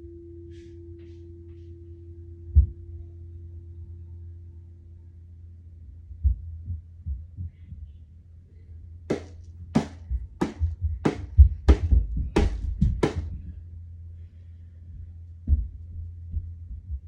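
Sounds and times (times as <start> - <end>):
singing bowl ringing: 0.0 - 4.6
low steady hum: 0.0 - 17.0
muffled low thumps: 2.4 - 3.1, 6.0 - 8.0, 9.1 - 13.9, 14.8 - 17.0
sharp knocks: 9.1 - 13.4.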